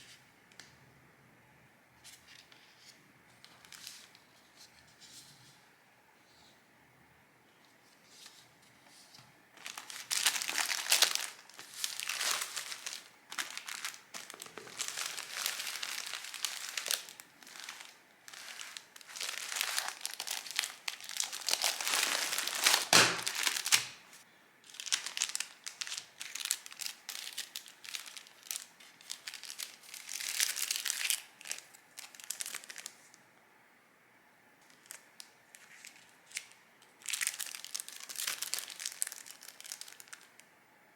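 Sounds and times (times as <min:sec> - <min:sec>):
packaging crinkling: 0:09.6 - 0:33.1, 0:34.6 - 0:40.4.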